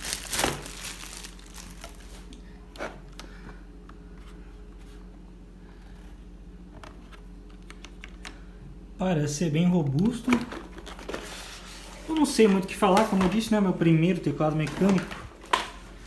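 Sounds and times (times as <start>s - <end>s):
packaging rustling and crinkling: 0.0s - 2.4s, 10.1s - 13.6s, 14.4s - 16.0s.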